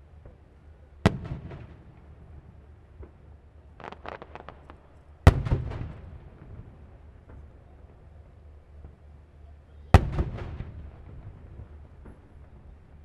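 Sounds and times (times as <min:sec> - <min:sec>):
fireworks pops: 0:03.8 - 0:06.2
fireworks bangs: 0:03.8 - 0:07.6.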